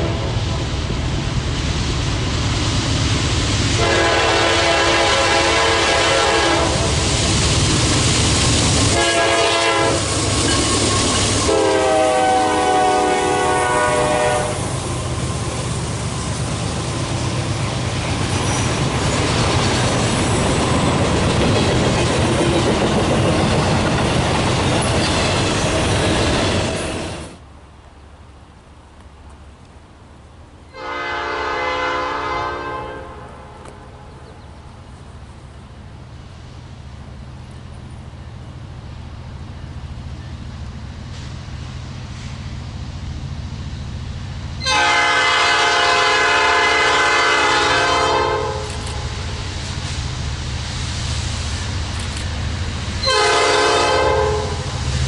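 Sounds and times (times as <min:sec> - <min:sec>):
train rumble and wheel clatter: 0:00.0 - 0:55.0
locomotive air horn: 0:03.8 - 0:07.0, 0:08.9 - 0:14.8, 0:30.7 - 0:34.0, 0:44.6 - 0:49.4, 0:53.0 - 0:54.8.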